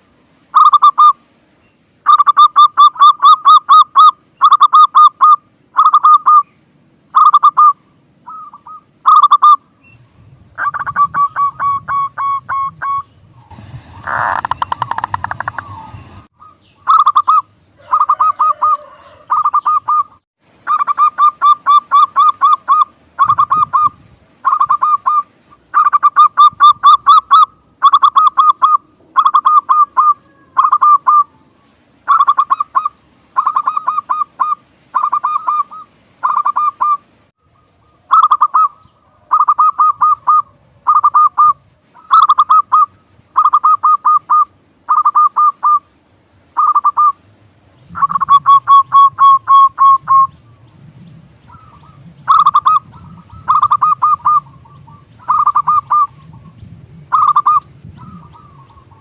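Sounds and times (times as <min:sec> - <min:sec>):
dove cooing: 0:10.6 - 0:13.1, 0:14.0 - 0:31.5, 0:32.1 - 0:45.9, 0:46.6 - 0:47.2, 0:47.9 - 0:59.0.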